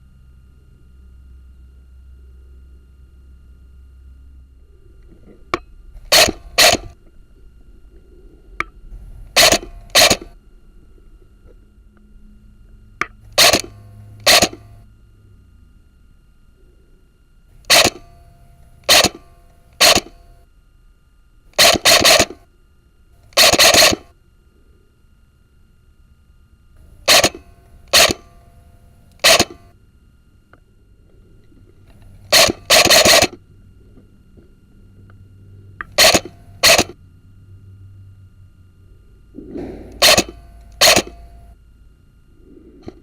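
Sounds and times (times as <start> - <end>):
faint low rumble: 0.0 - 21.6, 24.1 - 32.7, 33.3 - 43.0
thin steady hum: 0.0 - 43.0
airsoft gun firing: 6.1 - 7.0, 9.4 - 10.3, 13.4 - 14.6, 17.7 - 18.1, 18.9 - 19.2, 19.8 - 20.1, 21.6 - 22.4, 23.4 - 24.1, 27.1 - 28.3, 29.2 - 29.7, 32.3 - 33.4, 36.0 - 37.0, 39.4 - 41.2.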